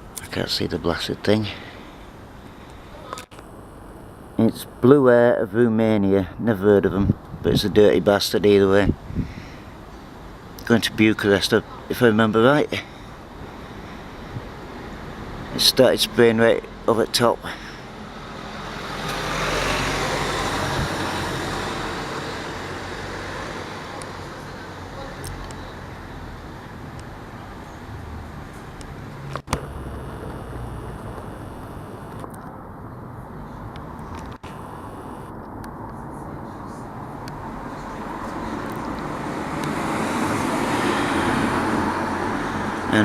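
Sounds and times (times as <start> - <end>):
vehicle driving past: 17.9 - 25.1, 27.9 - 32.1, 37.4 - 43.0.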